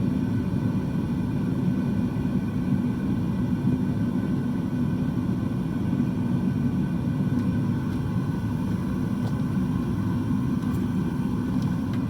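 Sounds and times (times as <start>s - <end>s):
furnace burner flame rumbling: 5.4s - 12.0s.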